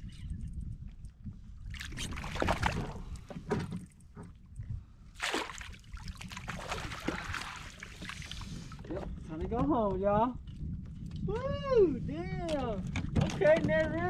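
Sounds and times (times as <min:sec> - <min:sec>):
water splashing at a kayak: 0:01.7 - 0:04.2, 0:05.1 - 0:09.0.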